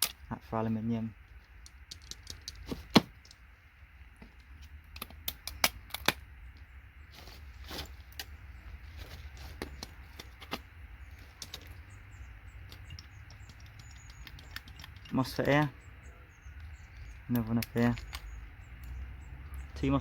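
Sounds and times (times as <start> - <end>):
components clicking and clinking: 0.0 - 0.3, 1.3 - 3.4, 9.0 - 15.7, 16.6 - 19.0.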